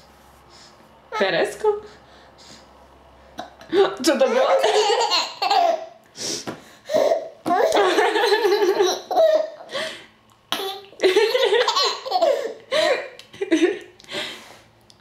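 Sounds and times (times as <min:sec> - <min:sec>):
baby laughing: 0:03.4 - 0:06.0, 0:06.9 - 0:09.7, 0:10.5 - 0:13.0.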